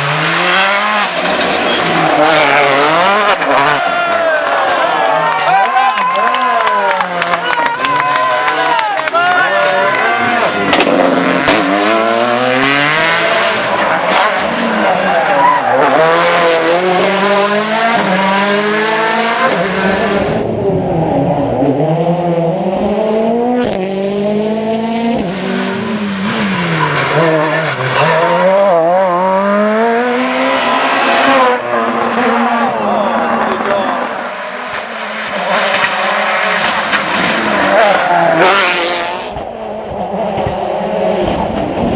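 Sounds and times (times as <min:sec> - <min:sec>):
rally car engine accelerating: 0:00.0 - 0:41.9
tyre squeal: 0:01.0 - 0:02.6.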